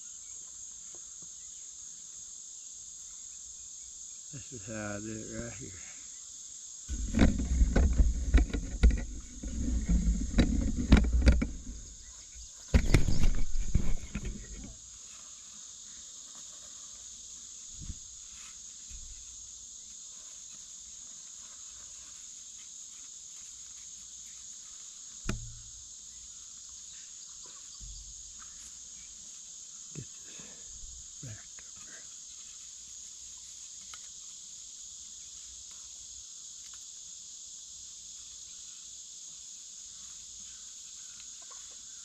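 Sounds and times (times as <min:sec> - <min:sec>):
insects chirring: 0:00.0 - 0:42.0
rumbling and rustling near microphone: 0:06.9 - 0:14.8, 0:17.7 - 0:18.2.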